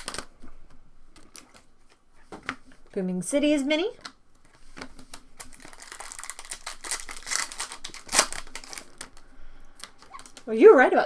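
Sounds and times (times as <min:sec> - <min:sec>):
wrapper tearing and crinkling: 0:00.0 - 0:00.3, 0:05.0 - 0:10.5.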